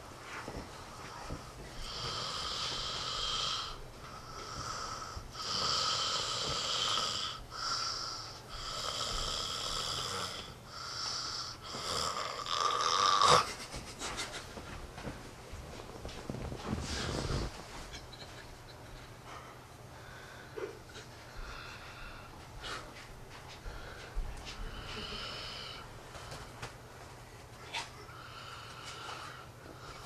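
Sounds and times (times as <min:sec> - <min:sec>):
man snoring loudly: 0:01.8 - 0:13.5.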